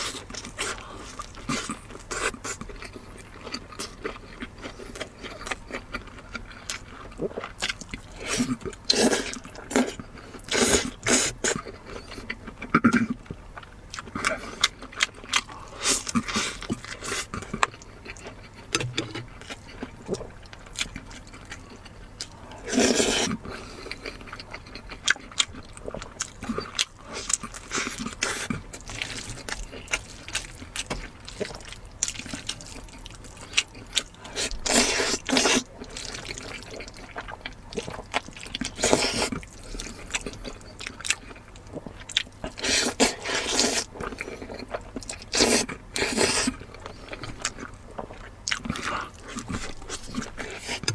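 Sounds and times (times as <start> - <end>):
wet chewing: 0.0 - 50.9
slurping: 22.3 - 24.0, 34.2 - 37.0.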